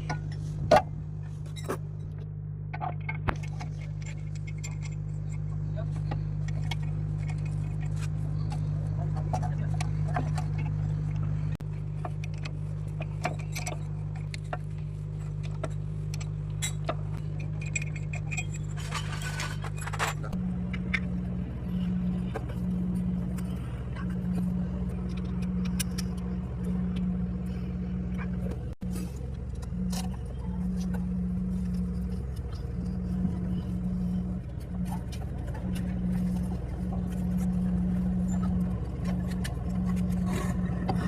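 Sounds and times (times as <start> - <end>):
steady low hum: 0.0 - 41.0
metal tools clinking: 3.4 - 10.8, 12.1 - 27.7.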